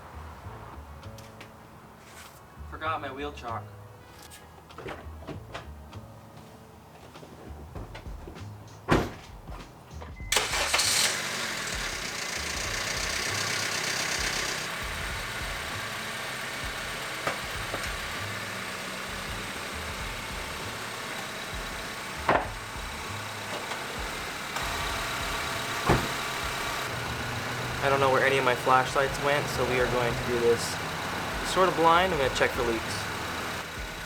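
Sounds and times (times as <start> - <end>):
car engine cranking and idling: 10.0 - 34.0.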